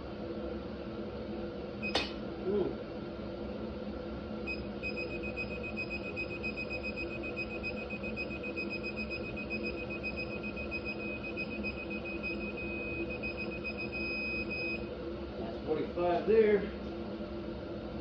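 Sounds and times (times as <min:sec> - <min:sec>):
steady low hum: 0:00.0 - 0:18.0
digital torque wrench beeping: 0:04.5 - 0:14.8.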